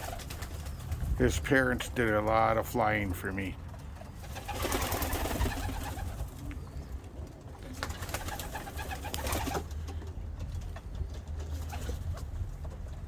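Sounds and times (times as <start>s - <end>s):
pigeons cooing: 3.8s - 12.8s.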